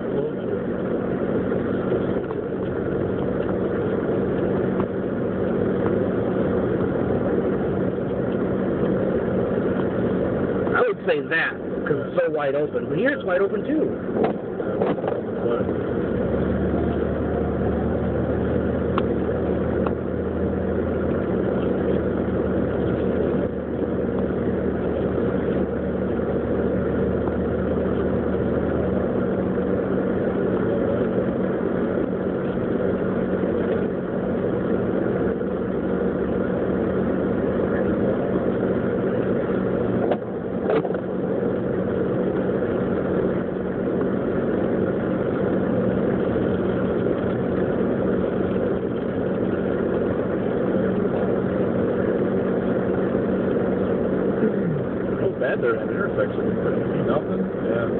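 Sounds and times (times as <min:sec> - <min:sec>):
car engine and road noise: 0:00.0 - 0:57.9
low hum: 0:00.0 - 0:57.9.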